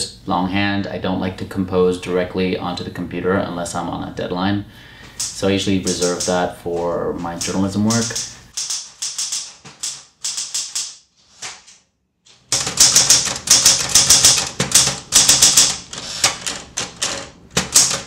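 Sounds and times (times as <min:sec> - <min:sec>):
manual typewriter typing: 0:05.2 - 0:18.0.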